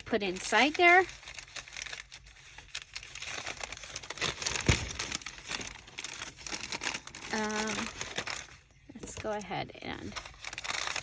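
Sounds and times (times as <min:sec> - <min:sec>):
paper rustling and crinkling: 0:00.0 - 0:11.0.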